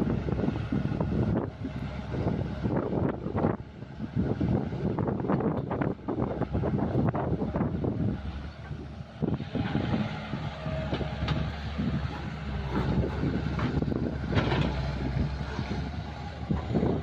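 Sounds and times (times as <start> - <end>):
excavator diesel engine running: 0.0 - 17.0
knocks and clanks: 12.6 - 15.2.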